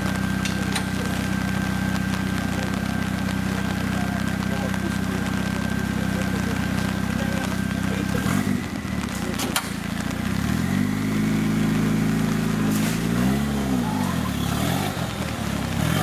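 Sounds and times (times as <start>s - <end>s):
off-road vehicle engine revving: 0.0s - 16.0s.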